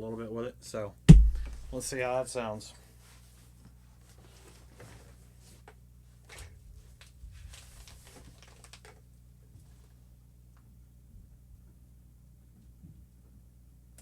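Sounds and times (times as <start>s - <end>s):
guitar amplifier hum: 1.1s - 2.0s.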